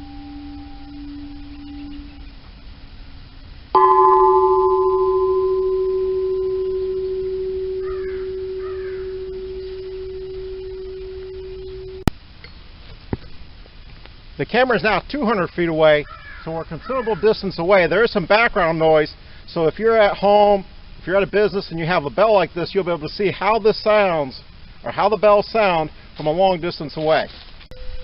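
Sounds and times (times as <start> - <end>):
gas cylinder bell ringing: 0.0 - 2.0, 3.8 - 12.0.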